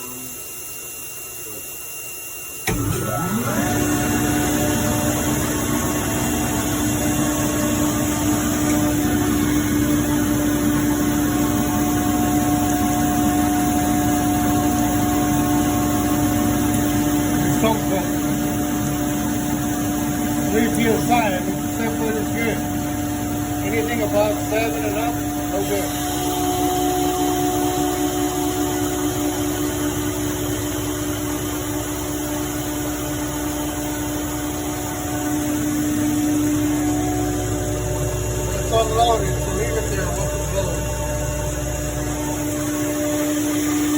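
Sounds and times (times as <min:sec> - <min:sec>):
air compressor running: 0:00.0 - 0:43.9.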